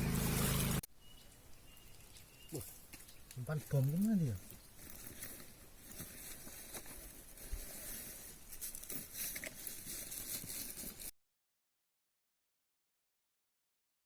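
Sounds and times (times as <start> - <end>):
rustling and crackling: 1.2 - 11.1.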